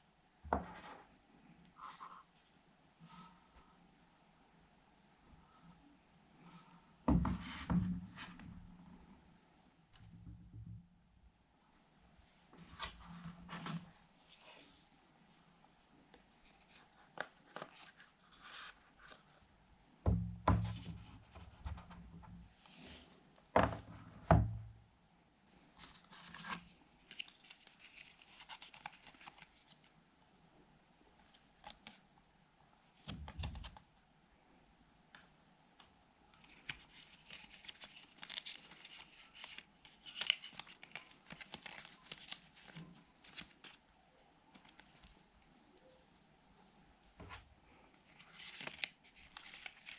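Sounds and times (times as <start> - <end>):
paper and plastic rustling: 16.3 - 19.3, 25.8 - 29.9, 36.4 - 43.8, 48.1 - 49.9.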